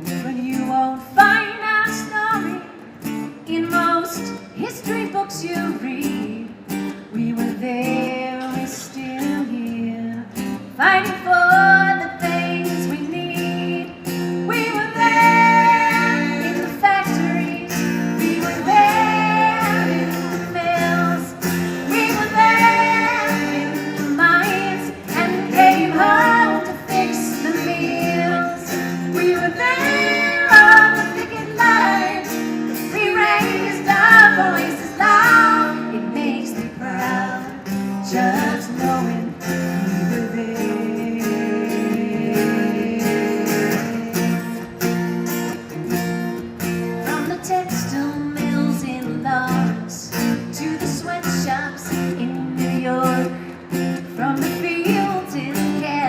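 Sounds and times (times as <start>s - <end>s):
women singing folk song: 0.0s - 2.8s, 3.4s - 44.8s, 46.9s - 56.0s
strummed acoustic guitar: 0.0s - 56.0s.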